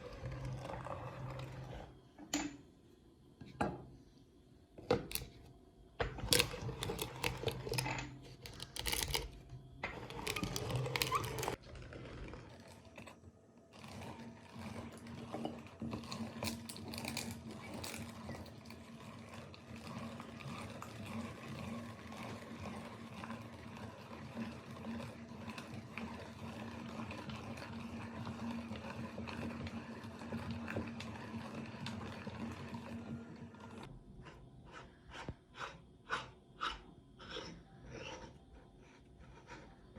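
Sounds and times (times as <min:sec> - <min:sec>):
meat grinder motor humming: 0:08.4 - 0:36.2.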